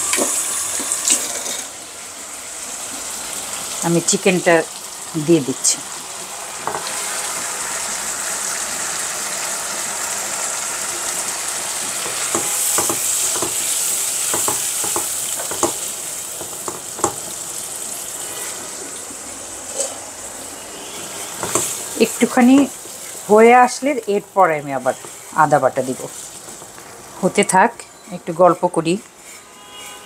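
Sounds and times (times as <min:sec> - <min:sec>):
chicken sizzling in a pan: 0:00.0 - 0:30.0
utensil knocking against a pan: 0:12.0 - 0:13.7, 0:14.3 - 0:15.8, 0:16.4 - 0:17.3, 0:21.4 - 0:21.8.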